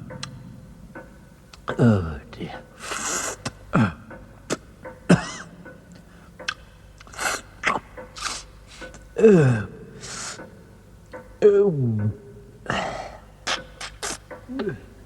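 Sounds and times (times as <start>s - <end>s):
sharp sniffing breaths: 8.2s - 8.8s
person moaning: 9.2s - 9.8s, 14.5s - 14.9s.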